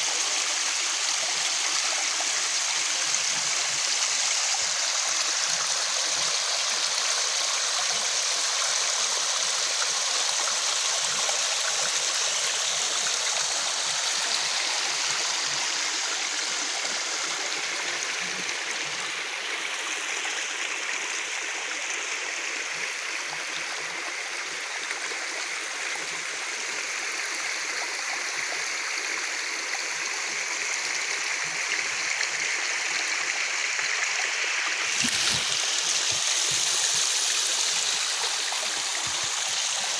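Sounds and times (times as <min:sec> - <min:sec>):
waterfall rushing and splashing: 0:00.0 - 0:19.7, 0:33.0 - 0:39.9.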